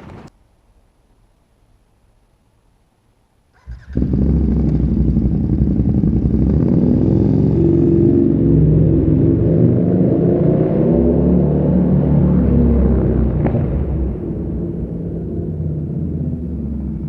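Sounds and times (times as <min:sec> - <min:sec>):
motorcycle engine starting and idling: 0:03.5 - 0:09.4.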